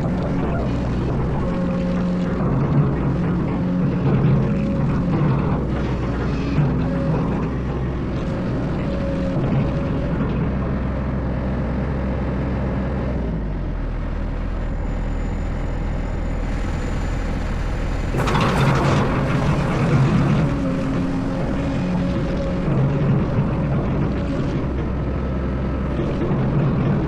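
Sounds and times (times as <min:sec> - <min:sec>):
diesel engine under load: 0:00.0 - 0:27.0
loud noisy burst: 0:15.6 - 0:24.1.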